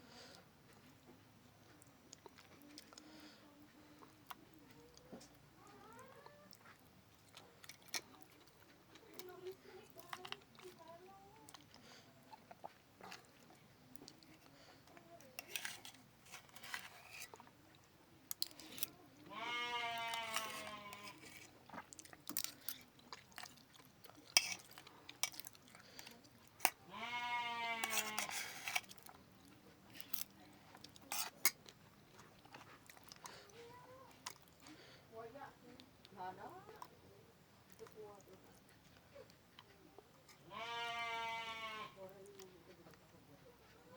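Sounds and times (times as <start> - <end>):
person chewing food: 0.0 - 41.4
goat bleating: 19.3 - 21.2, 26.9 - 28.4, 40.5 - 42.0.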